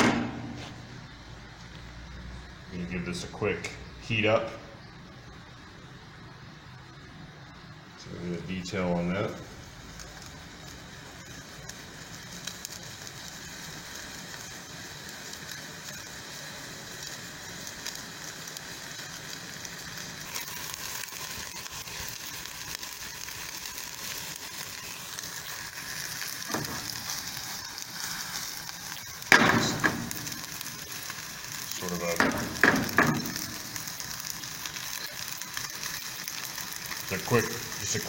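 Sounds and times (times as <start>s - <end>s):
meat sizzling in a frying pan: 8.0s - 38.0s.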